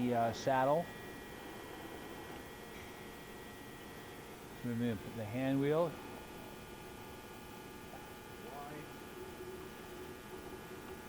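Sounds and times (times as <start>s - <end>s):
mill electrical hum: 0.0s - 11.0s.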